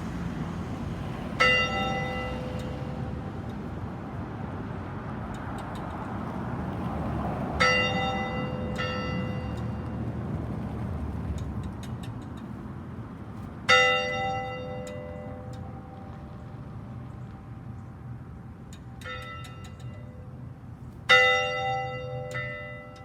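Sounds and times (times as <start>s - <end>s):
church bell tolling: 1.4s - 3.0s, 7.6s - 9.8s, 13.7s - 15.9s, 21.1s - 23.0s.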